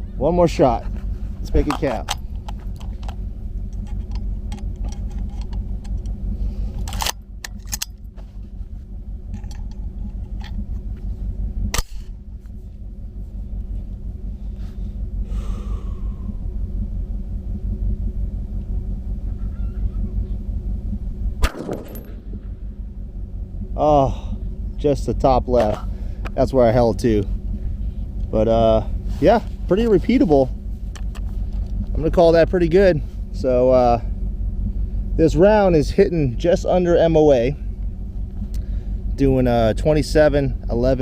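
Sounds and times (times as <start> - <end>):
sharp crack: 11.7 - 12.2, 21.4 - 22.7.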